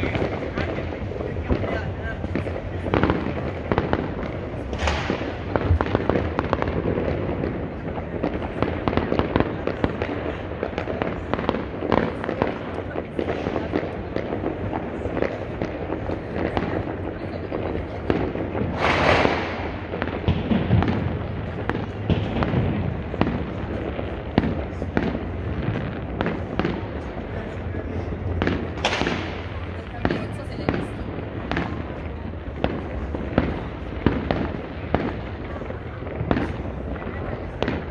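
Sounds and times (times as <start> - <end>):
fireworks and firecrackers crackling: 0.0 - 37.9
loud hissing firework burst: 18.7 - 19.8.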